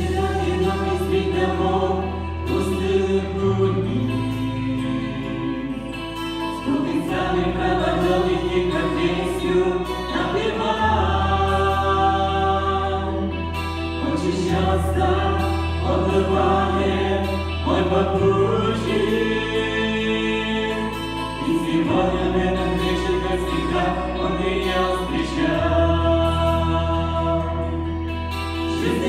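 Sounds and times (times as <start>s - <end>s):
choir singing: 0.0s - 29.0s.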